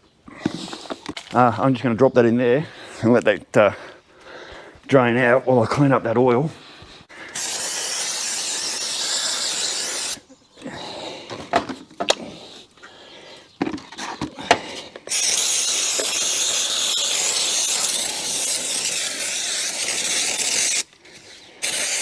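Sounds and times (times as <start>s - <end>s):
aerosol can spraying: 7.3s - 10.2s, 15.1s - 20.9s, 21.6s - 22.0s
knocks and clicks of handling: 11.3s - 12.2s, 13.6s - 15.1s.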